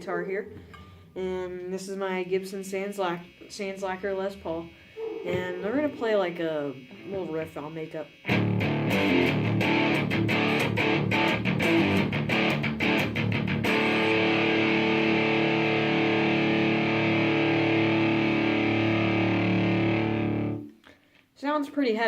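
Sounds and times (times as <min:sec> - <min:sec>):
distorted electric guitar riff: 0:03.2 - 0:20.7.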